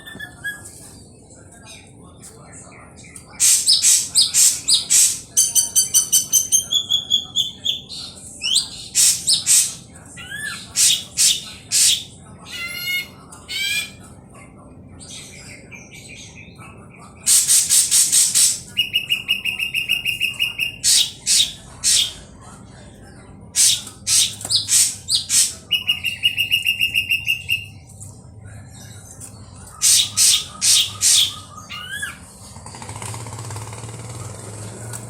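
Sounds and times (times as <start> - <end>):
harsh bird chattering: 3.0 - 14.0, 15.0 - 22.4, 23.5 - 27.9, 28.7 - 34.4
bird song with raspy notes: 15.0 - 22.2, 23.6 - 27.9, 28.6 - 34.4.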